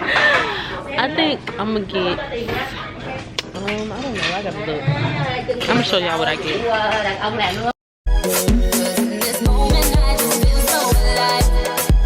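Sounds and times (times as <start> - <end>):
heavy bass drum beat: 8.1 - 12.0.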